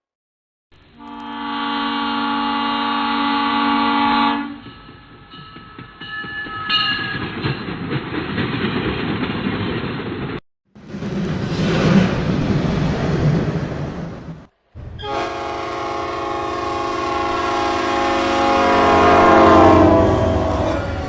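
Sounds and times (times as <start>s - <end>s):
train horn blast: 0.9s - 4.7s, 15.0s - 21.0s
train rumbling and clattering: 3.8s - 21.0s.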